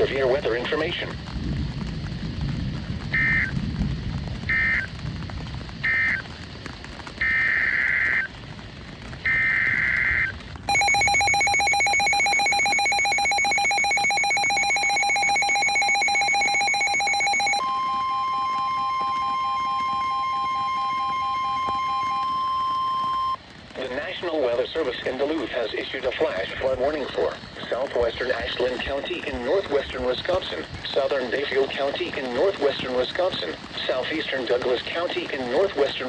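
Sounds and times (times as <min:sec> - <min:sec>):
data burst tones: 0:03.1 - 0:03.6, 0:04.4 - 0:04.9, 0:05.8 - 0:06.3, 0:07.2 - 0:08.3, 0:09.2 - 0:24.1
rapidly pulsing electronic alarm: 0:03.1 - 0:03.6, 0:04.4 - 0:05.0, 0:05.8 - 0:06.4, 0:07.2 - 0:08.4, 0:09.2 - 0:23.4
steady warning alarm tone: 0:03.2 - 0:03.6, 0:09.3 - 0:23.4.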